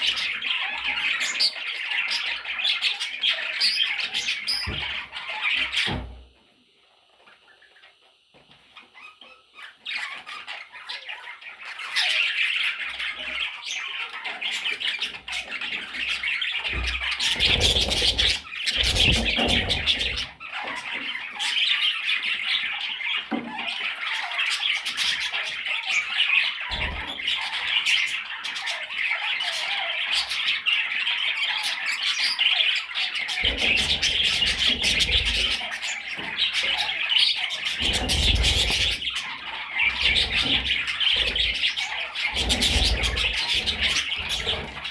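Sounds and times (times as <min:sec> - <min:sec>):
budgerigars chattering and squawking: 0:00.0 - 0:06.1, 0:08.8 - 0:44.9.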